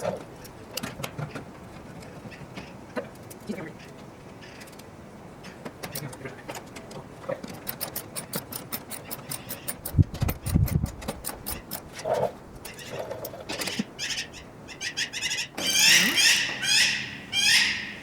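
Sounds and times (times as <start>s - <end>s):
hand tools clicking: 5.8s - 12.0s.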